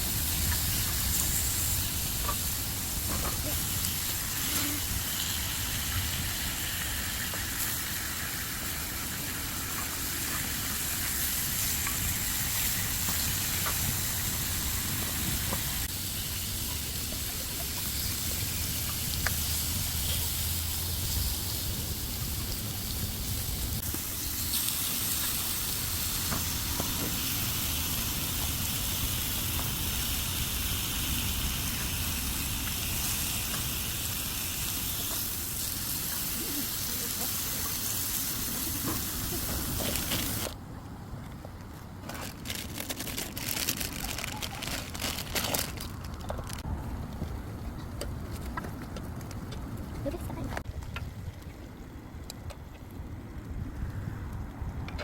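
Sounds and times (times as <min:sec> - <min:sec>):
meat sizzling in a pan: 0:00.0 - 0:40.5.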